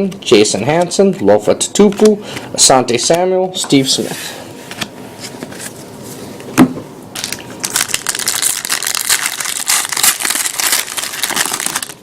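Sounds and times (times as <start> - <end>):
wrapper tearing and crinkling: 7.2 - 12.0.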